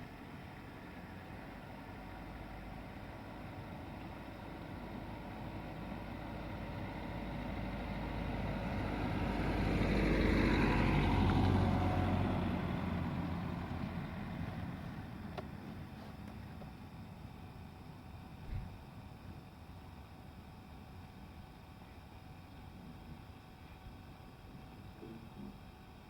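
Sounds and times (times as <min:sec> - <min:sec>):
vehicle passing by: 0:08.9 - 0:14.0.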